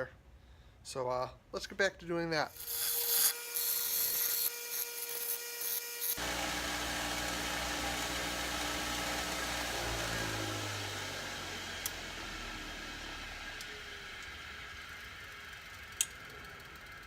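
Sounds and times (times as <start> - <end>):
grinding wheel grinding steel: 2.5 - 17.0
motor running: 6.1 - 17.0.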